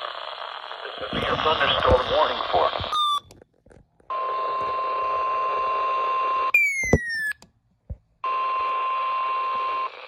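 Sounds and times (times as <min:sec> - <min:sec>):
radio static: 0:00.0 - 0:03.2.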